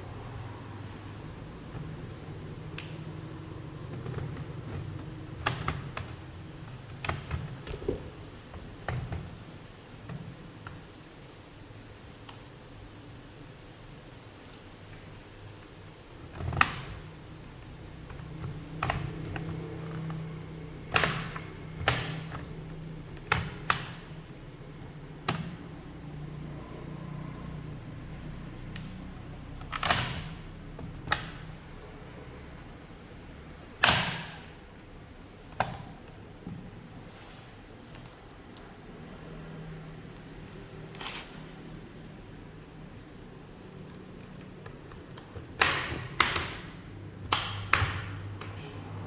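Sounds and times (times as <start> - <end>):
plastic clips snapping: 33.7 - 34.6, 43.8 - 48.8.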